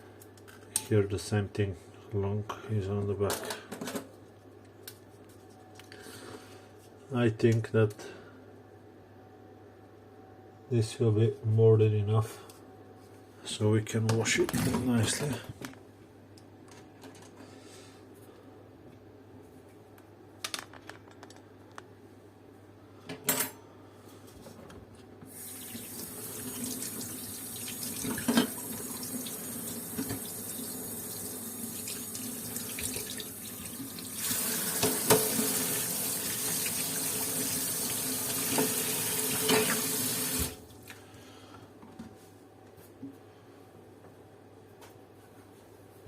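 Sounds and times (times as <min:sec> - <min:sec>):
tap water running into sink: 0:25.3 - 0:40.6.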